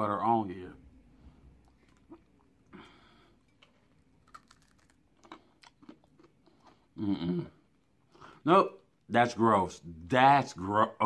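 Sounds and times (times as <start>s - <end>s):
chewing crunchy granola bar: 3.6s - 6.9s.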